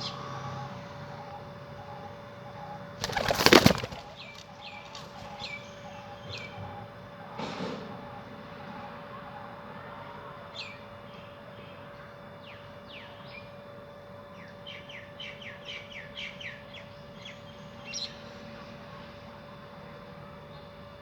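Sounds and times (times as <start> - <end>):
small birds chirping: 1.8 - 6.6.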